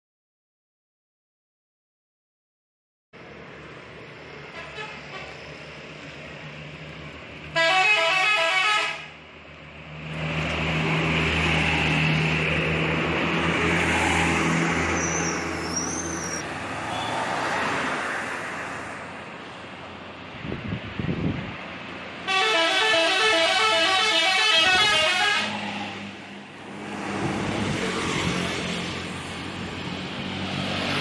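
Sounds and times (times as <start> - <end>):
bus passing by: 3.2 - 31.0
bus horn warbling tune: 4.5 - 5.5, 7.5 - 9.2, 22.2 - 25.6.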